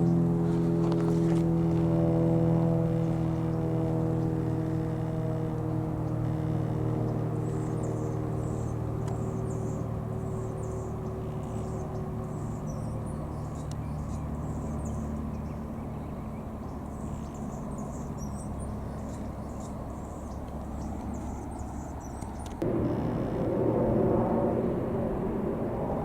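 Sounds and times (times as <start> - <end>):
distant road traffic rumble: 0.0 - 26.0
small birds chirping: 3.0 - 22.6.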